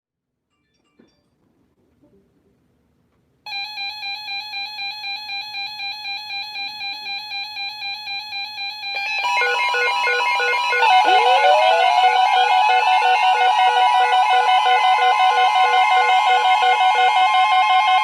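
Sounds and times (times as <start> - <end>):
electronic alarm beeping: 7.2 - 18.0
louder layer of tones: 9.8 - 16.8.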